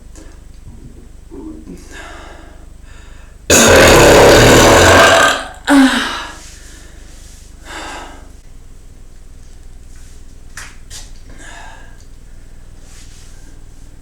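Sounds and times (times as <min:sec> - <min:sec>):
person belching: 0:03.5 - 0:06.0.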